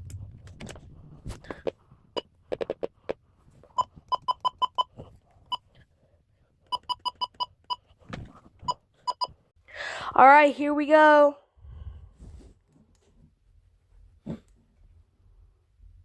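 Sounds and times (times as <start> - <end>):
short electronic keypad beeps: 6.7 - 7.8.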